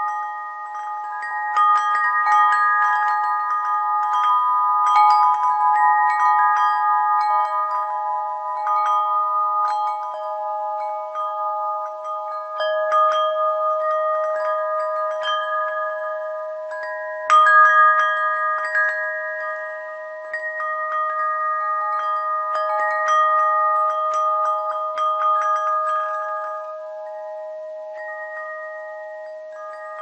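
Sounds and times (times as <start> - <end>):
metal bells chiming: 0.0 - 30.0.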